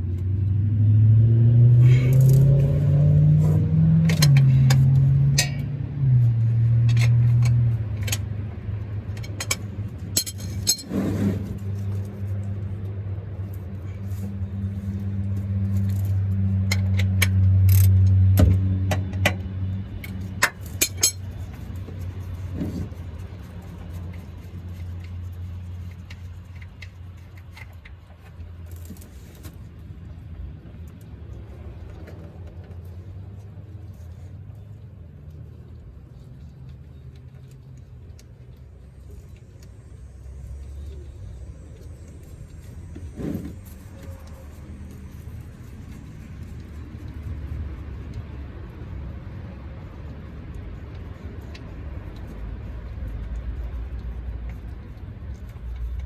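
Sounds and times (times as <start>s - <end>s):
vehicle engine hum passing: 0.0s - 56.0s
sharp metallic clinks: 20.6s - 21.3s.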